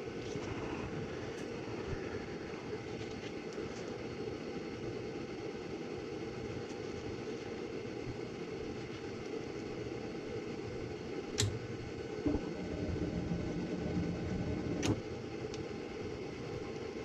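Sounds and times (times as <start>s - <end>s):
furnace fan hum: 0.0s - 17.0s
furnace ignition click: 11.3s - 11.7s, 14.6s - 15.0s.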